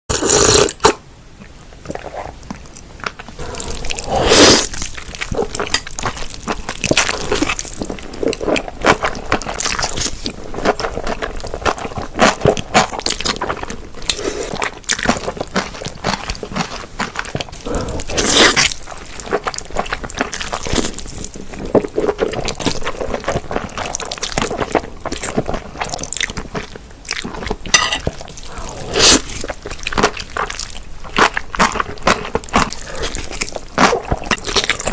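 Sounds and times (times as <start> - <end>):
slurping noodles: 0.1 - 1.0, 3.4 - 5.7, 17.6 - 18.8, 28.4 - 29.5
wet chewing and smacking: 1.4 - 34.9.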